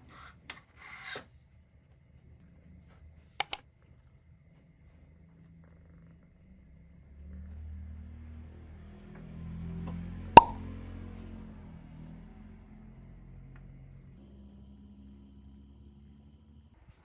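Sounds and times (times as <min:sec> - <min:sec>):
sharp clicks: 0:03.4 - 0:03.6
faint low hum: 0:12.2 - 0:17.0.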